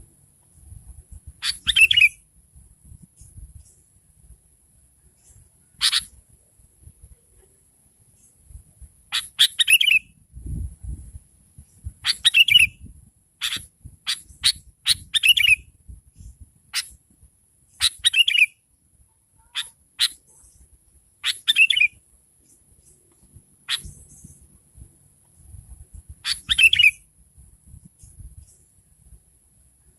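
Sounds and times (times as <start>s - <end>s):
bird chattering calls: 1.4s - 2.2s, 5.8s - 6.2s, 12.0s - 12.7s, 13.4s - 15.6s, 19.4s - 20.6s, 21.2s - 21.9s, 23.7s - 24.4s, 26.2s - 27.0s
faint low rumbles: 10.2s - 12.1s.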